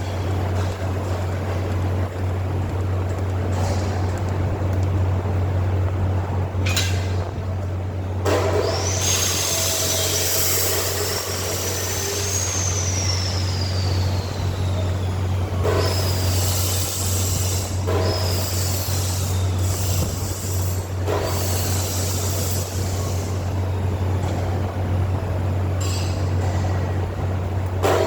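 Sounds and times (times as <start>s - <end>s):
low electrical hum: 0.0s - 28.0s
faint high whistles: 8.8s - 16.5s.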